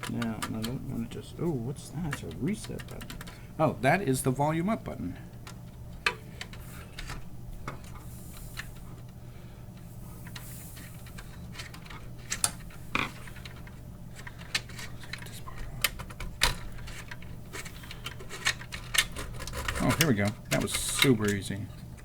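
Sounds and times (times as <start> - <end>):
steady low hum: 0.0 - 22.0
metal and plastic parts clicking: 2.1 - 3.4, 10.2 - 22.0.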